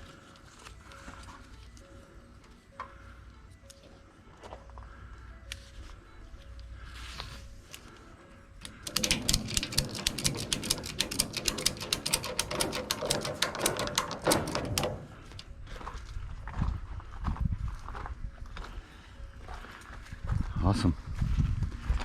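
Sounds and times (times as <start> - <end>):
quiet background music: 0.0 - 22.0
rapid sharp clicking and clattering: 8.6 - 15.5.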